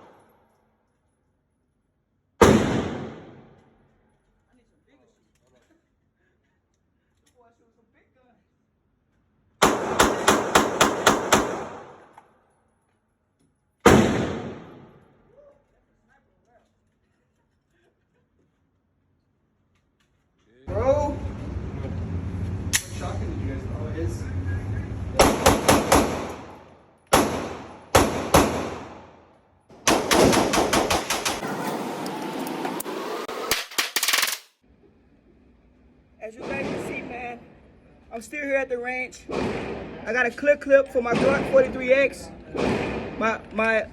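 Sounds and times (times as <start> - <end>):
gunshots ringing out: 2.4 - 3.6, 9.6 - 12.2, 13.8 - 15.0, 25.2 - 31.6, 36.4 - 37.4, 39.2 - 40.3, 41.0 - 43.8.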